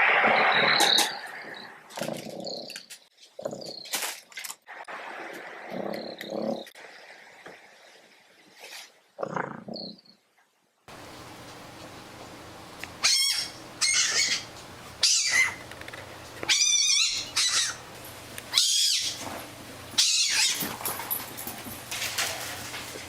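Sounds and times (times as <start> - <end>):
fox high-pitched calls: 13.0 - 15.6, 16.4 - 17.8, 18.5 - 19.2, 20.0 - 20.6.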